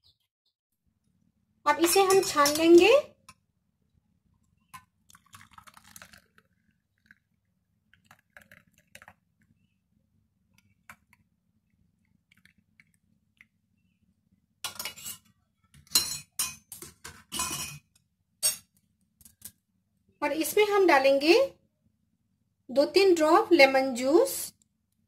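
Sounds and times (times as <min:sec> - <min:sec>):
tea pouring and dripping: 0:03.3 - 0:09.8, 0:10.5 - 0:14.1.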